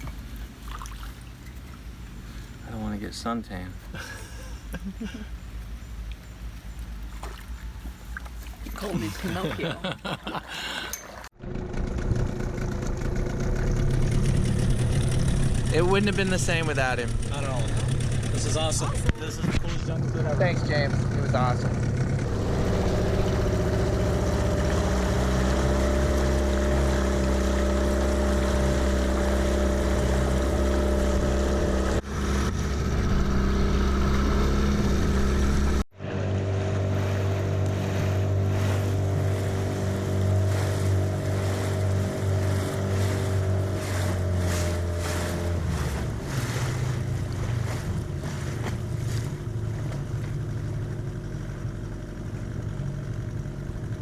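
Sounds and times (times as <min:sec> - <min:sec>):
water noise: 0:00.0 - 0:11.4, 0:22.2 - 0:52.6
motorboat engine running: 0:00.0 - 0:54.0.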